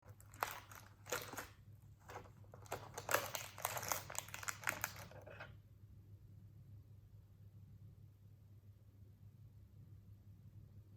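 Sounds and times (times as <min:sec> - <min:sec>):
candy wrapper crinkling: 0:00.0 - 0:05.5
faint low hum: 0:00.0 - 0:10.9.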